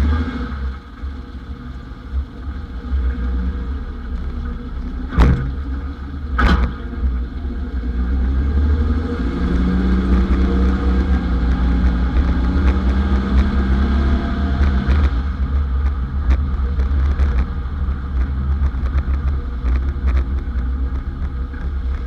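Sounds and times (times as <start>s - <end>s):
vehicle engine rumbling: 0.0s - 22.0s
sharp knocks: 5.1s - 5.6s.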